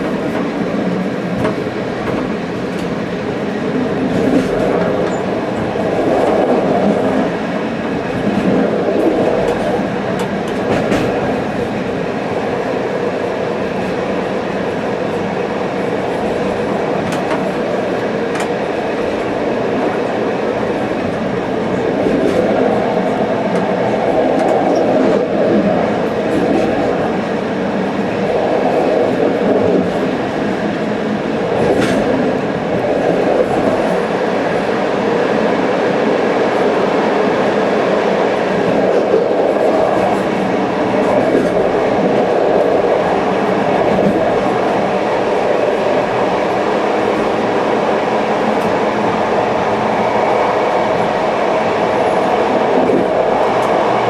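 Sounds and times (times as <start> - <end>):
train wheels rumbling on rails: 0.0 - 54.0.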